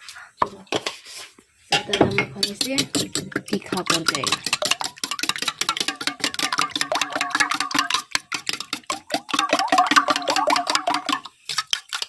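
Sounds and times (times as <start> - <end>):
fork beating eggs in a bowl: 1.8 - 12.0.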